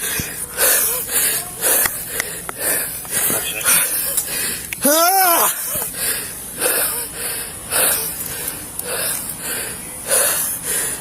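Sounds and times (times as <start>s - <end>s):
person breathing hard: 0.0s - 11.0s.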